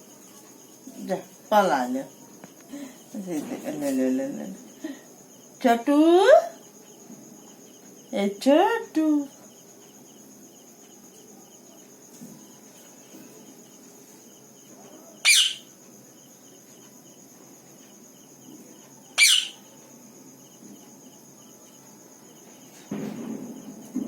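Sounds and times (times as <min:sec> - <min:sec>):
faint cricket chirping: 0:00.0 - 0:24.0
high insect drone: 0:00.0 - 0:24.0
parrot screeching: 0:15.2 - 0:15.7, 0:19.2 - 0:19.6.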